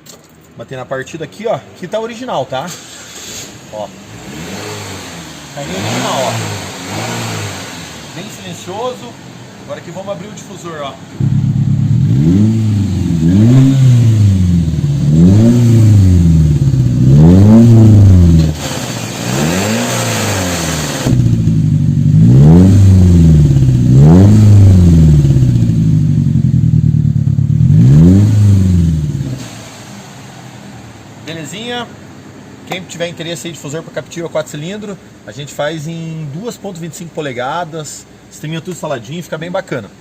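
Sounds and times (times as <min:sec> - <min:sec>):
car engine revving: 0:02.7 - 0:32.7.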